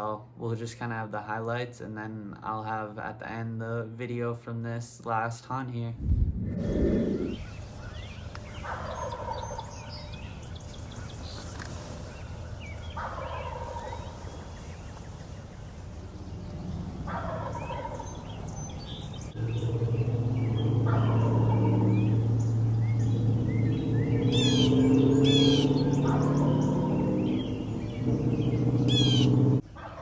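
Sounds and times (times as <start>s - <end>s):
steady low hum: 6.0s - 29.6s
wild turkey gobbling: 12.7s - 30.0s.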